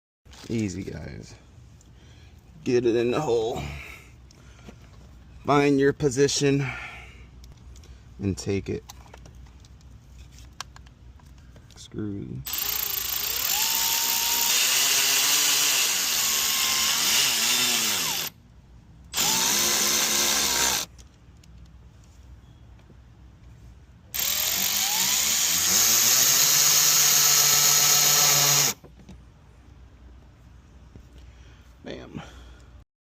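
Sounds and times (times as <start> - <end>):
power drill driving screws: 12.5 - 18.3, 19.1 - 20.9, 24.2 - 28.8.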